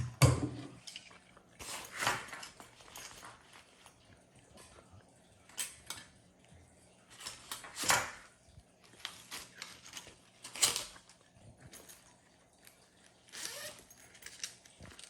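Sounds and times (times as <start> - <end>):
metal tools clinking and rattling: 9.0 - 15.0.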